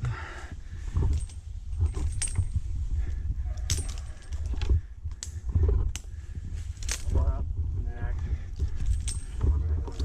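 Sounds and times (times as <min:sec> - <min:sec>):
steady low rumble: 0:00.0 - 0:10.0
metal climbing hardware clinking: 0:00.9 - 0:07.4, 0:08.5 - 0:10.0.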